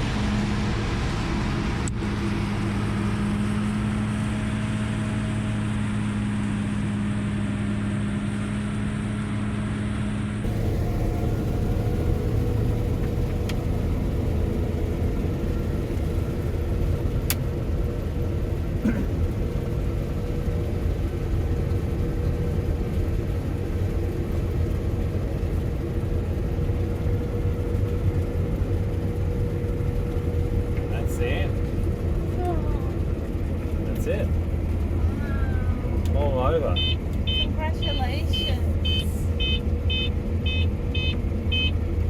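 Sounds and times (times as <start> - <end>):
combine harvester droning: 0.0 - 42.0.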